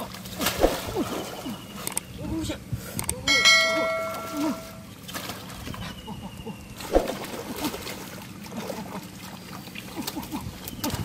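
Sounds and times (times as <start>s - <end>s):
bright bell-like ringing: 3.3s - 4.8s.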